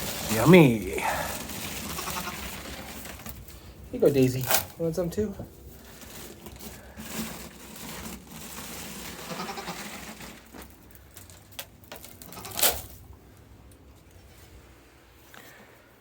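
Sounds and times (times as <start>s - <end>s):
rustling: 0.0s - 16.0s
goat bleating: 1.8s - 2.6s, 9.2s - 9.9s, 12.2s - 12.7s.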